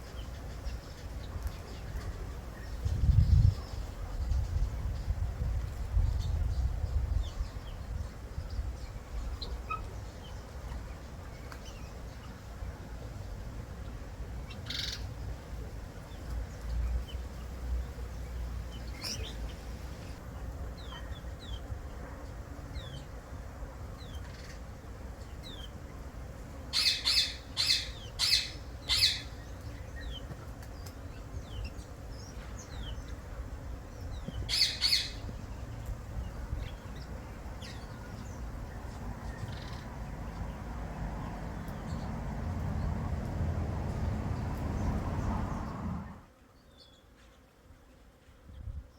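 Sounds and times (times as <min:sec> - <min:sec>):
small birds chirping: 0:00.0 - 0:13.4, 0:14.4 - 0:23.2, 0:23.9 - 0:26.1, 0:26.7 - 0:45.9
birds squawking loudly: 0:26.8 - 0:29.4, 0:34.5 - 0:35.2.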